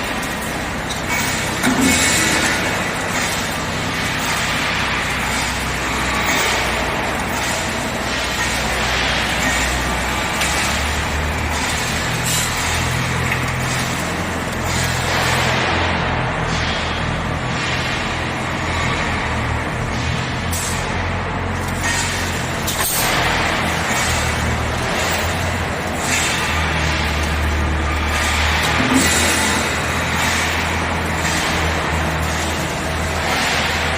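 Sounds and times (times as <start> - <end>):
hissing clattering surges: 0.0 - 33.9
mechanical din: 21.7 - 33.9.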